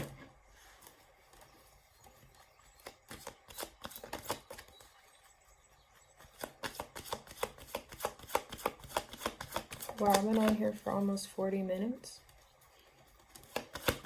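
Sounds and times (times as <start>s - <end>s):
cards shuffling clicks: 2.8s - 4.7s, 13.3s - 14.0s.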